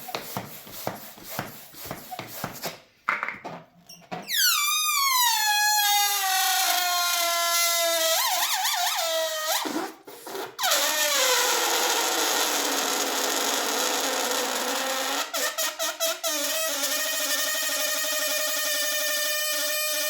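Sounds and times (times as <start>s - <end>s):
balloon deflating with squeal: 4.2s - 20.0s.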